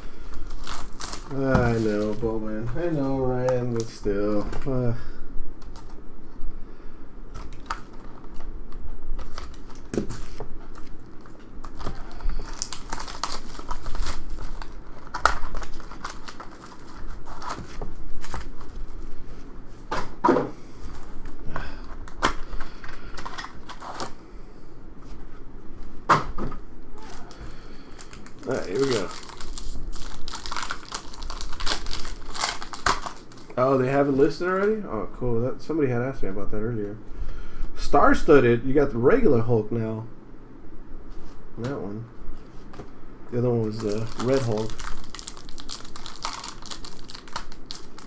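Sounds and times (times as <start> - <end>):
card wrappers crinkling and tearing: 0.0 - 4.8, 7.3 - 8.5, 9.2 - 19.2, 21.8 - 24.2, 27.0 - 34.7, 43.4 - 48.0.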